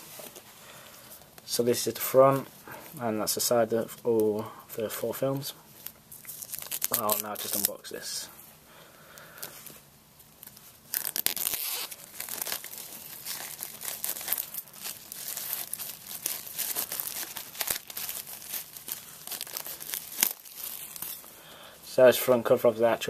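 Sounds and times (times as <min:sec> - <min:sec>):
plastic shrink-wrap tearing: 0:05.8 - 0:07.9, 0:10.4 - 0:21.3.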